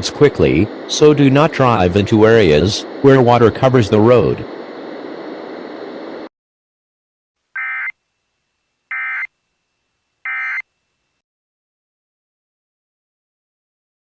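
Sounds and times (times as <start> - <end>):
steady hiss: 0.0 - 6.3
digital data tone bursts: 7.6 - 8.0, 8.9 - 9.3, 10.3 - 10.7.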